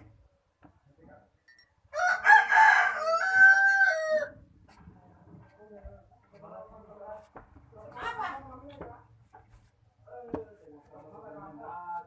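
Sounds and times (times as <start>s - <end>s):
rooster crowing: 1.9s - 4.4s.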